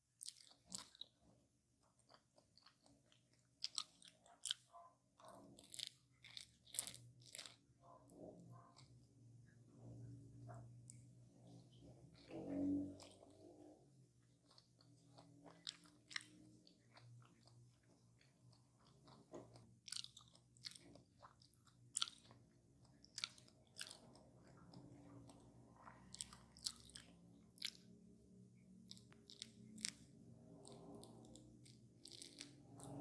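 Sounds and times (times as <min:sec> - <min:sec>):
person chewing crisp crust: 0:00.0 - 0:09.0, 0:10.0 - 0:13.6, 0:14.2 - 0:33.0.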